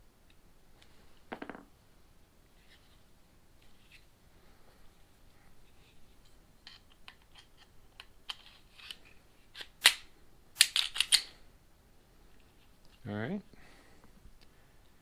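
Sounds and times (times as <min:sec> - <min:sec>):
metallic clicks of pistol parts: 0:06.6 - 0:11.4.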